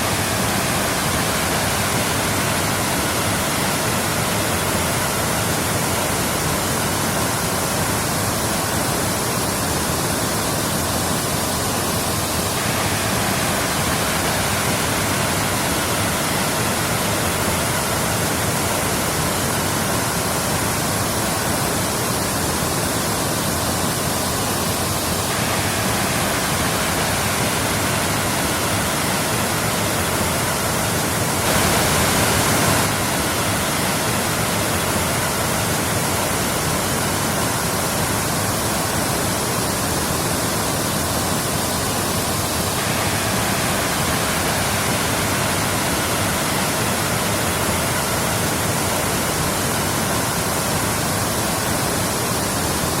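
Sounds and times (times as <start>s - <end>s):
waterfall rushing: 0.0s - 53.0s.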